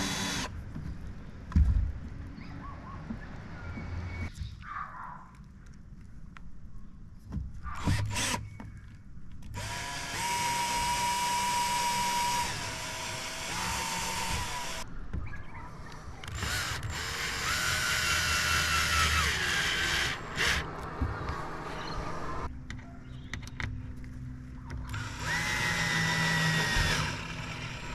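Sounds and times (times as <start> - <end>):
power drill driving screws: 0.0 - 0.5, 9.6 - 14.8, 16.3 - 20.7, 24.9 - 27.9.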